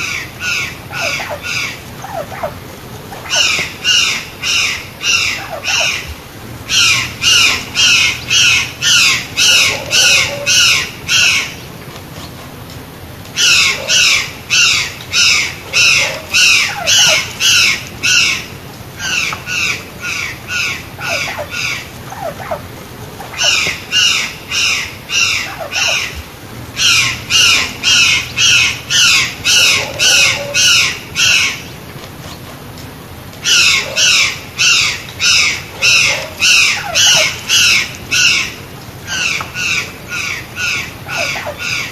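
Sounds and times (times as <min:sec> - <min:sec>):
jay calling loudly: 0:06.7 - 0:11.6, 0:26.8 - 0:31.7.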